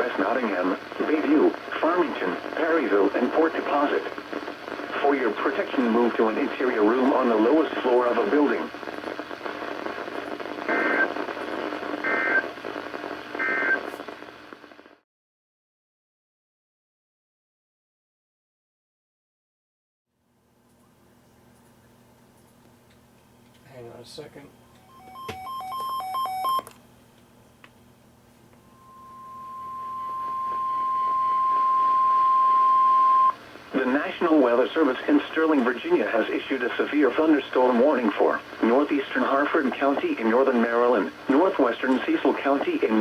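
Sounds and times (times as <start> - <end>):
radio static hiss: 0.0 - 15.0, 28.5 - 43.0
warbling digital data tones: 28.6 - 33.3.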